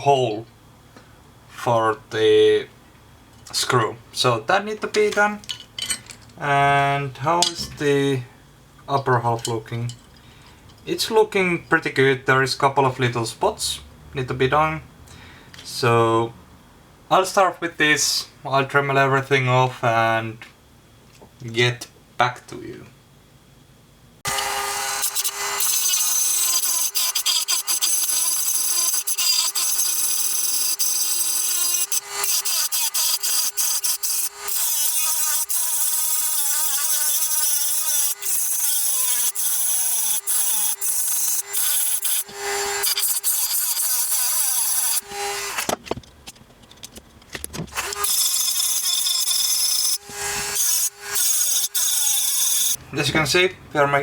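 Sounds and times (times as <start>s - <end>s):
rotary tool grinding: 24.3s - 52.8s.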